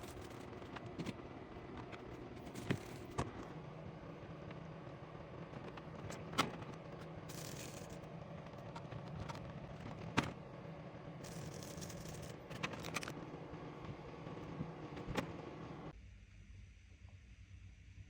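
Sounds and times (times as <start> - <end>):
faint steady hum: 0.0 - 18.0
sharp clicks of items set down: 11.2 - 13.2.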